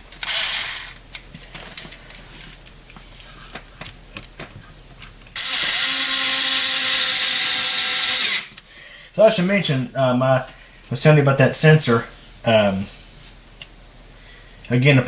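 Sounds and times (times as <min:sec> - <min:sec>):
power drill motor running: 0:00.2 - 0:01.0, 0:05.4 - 0:08.6.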